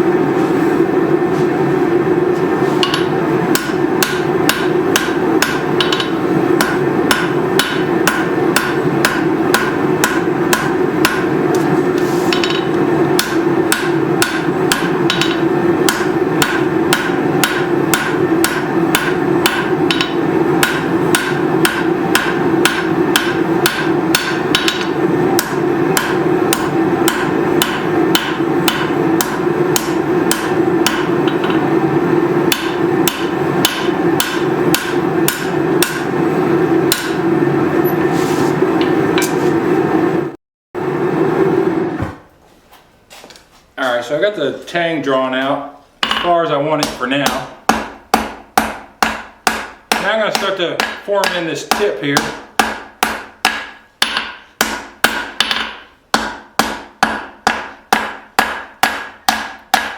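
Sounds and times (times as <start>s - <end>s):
hammer striking steel on anvil: 2.8s - 11.4s, 12.3s - 31.8s, 32.5s - 36.2s, 36.9s - 37.3s, 46.0s - 59.9s.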